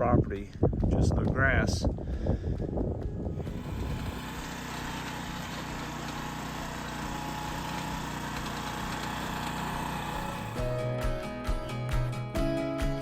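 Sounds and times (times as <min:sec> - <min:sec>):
small gasoline engine running: 0:03.4 - 0:10.8.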